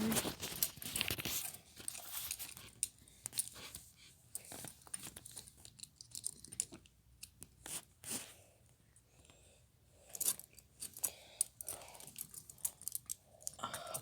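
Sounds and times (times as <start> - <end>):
metal handcuffs and chain rattling: 0.0 - 3.7, 4.6 - 6.8, 10.0 - 14.0.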